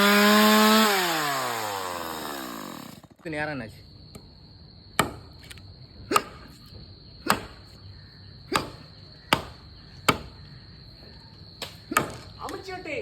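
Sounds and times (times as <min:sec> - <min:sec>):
high insect drone: 0:00.0 - 0:13.0
heavy tool striking wood: 0:05.0 - 0:05.3, 0:08.5 - 0:10.3, 0:11.9 - 0:12.3.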